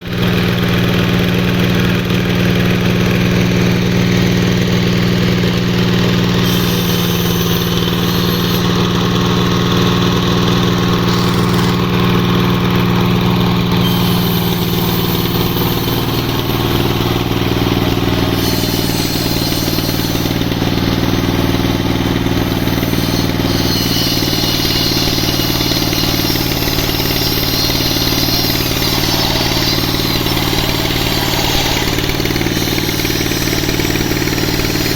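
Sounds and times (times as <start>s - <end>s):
sawmill engine running: 0.0s - 34.9s.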